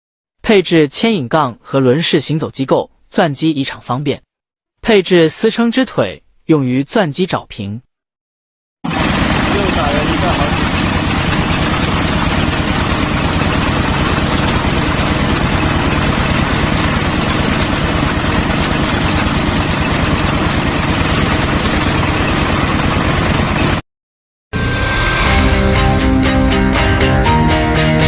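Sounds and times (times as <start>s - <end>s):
diesel engine chugging: 8.9s - 23.8s, 25.1s - 28.0s.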